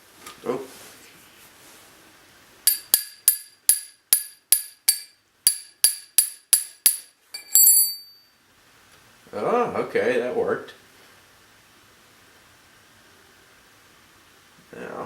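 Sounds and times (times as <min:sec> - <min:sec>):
hammer striking metal: 0:02.7 - 0:08.3.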